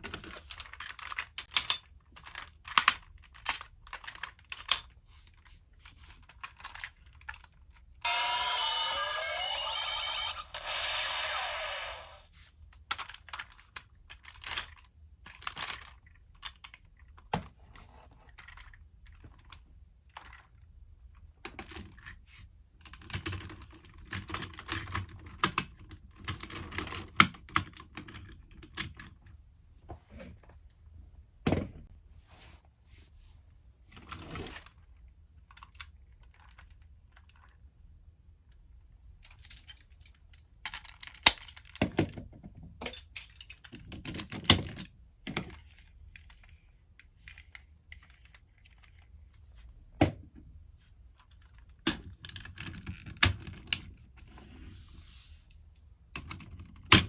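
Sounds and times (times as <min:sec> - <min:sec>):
plastic toy parts clicking: 0:00.1 - 0:05.0, 0:06.0 - 0:12.0, 0:12.8 - 0:17.1, 0:39.2 - 0:42.1
toy electronic sound effect: 0:08.0 - 0:12.3.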